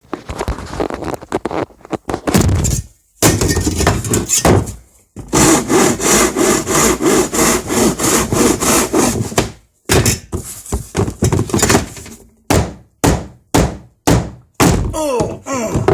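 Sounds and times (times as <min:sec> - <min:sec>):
handsaw cutting wood: 0:05.3 - 0:09.4.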